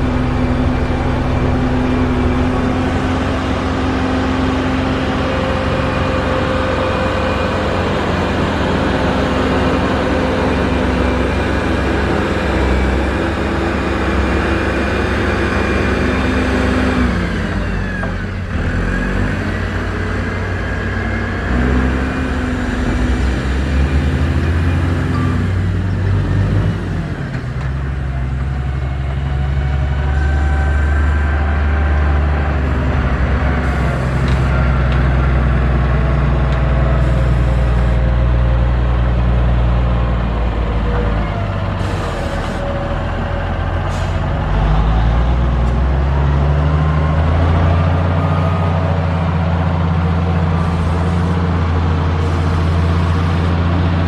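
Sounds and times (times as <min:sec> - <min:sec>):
diesel engine under load: 0:00.0 - 0:54.0.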